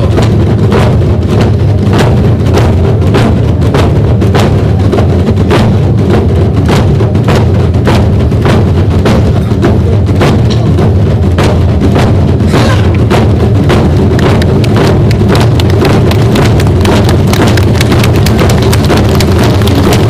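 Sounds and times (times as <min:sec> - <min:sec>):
barrel drums beaten by ensemble: 0:00.0 - 0:20.0.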